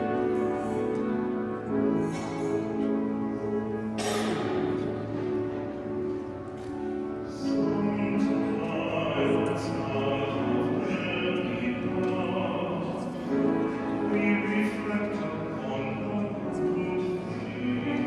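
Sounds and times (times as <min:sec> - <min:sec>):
classical music sustained notes: 0:00.0 - 0:18.0
operatic singing voice: 0:07.3 - 0:18.0.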